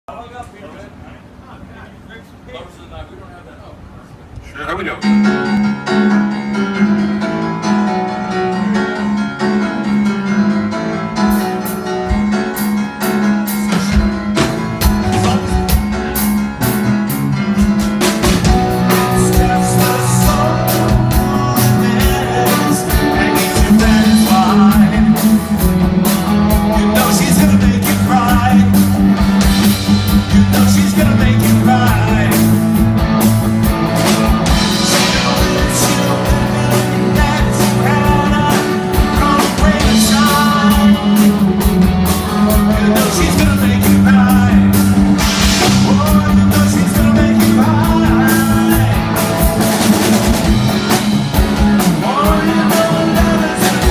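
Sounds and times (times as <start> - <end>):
bass guitar: 5.0 - 53.9
electric guitar: 5.0 - 53.9
drum kit: 5.1 - 53.9.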